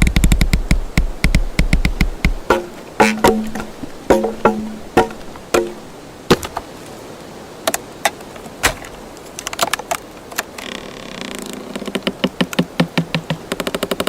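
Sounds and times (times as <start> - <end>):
wooden knocks and cracks: 0.0 - 6.7, 7.7 - 10.6, 11.4 - 14.0
grating creak: 10.4 - 14.0.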